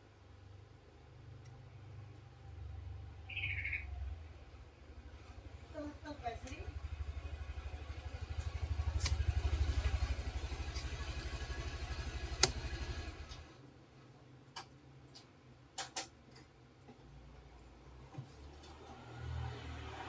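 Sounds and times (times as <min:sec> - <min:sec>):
small engine running: 0:05.2 - 0:13.6, 0:18.7 - 0:20.0.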